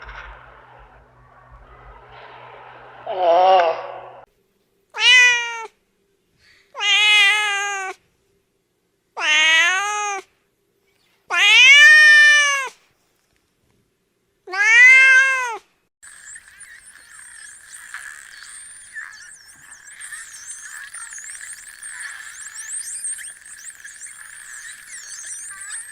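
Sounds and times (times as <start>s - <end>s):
cat meowing: 5.0s - 5.7s, 6.8s - 8.0s, 9.2s - 10.3s, 11.3s - 12.8s, 14.5s - 15.6s.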